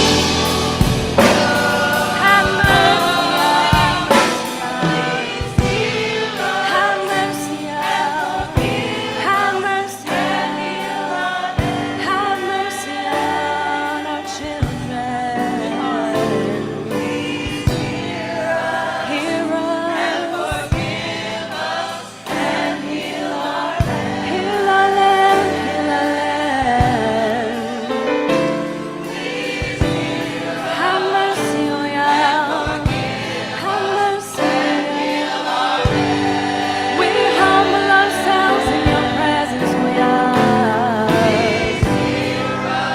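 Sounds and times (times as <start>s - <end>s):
steady beat: 0.0s - 7.4s
choir singing gospel song: 0.0s - 42.9s.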